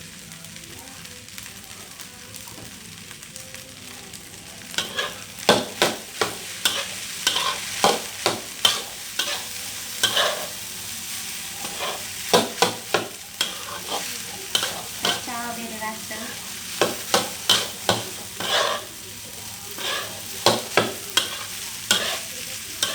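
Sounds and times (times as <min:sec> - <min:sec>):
rice sizzling in a pan: 0:00.0 - 0:22.9
utensil scraping a pan: 0:04.8 - 0:10.6, 0:11.5 - 0:15.4, 0:16.2 - 0:18.9, 0:19.7 - 0:22.9.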